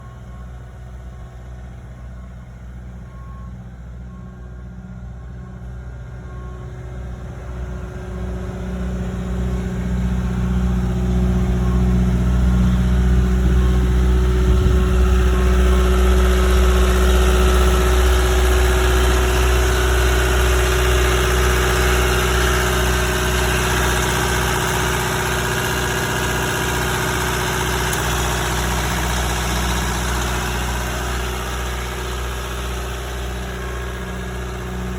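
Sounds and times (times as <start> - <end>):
diesel engine running: 0.0 - 34.9
faint regular beep: 3.1 - 4.6.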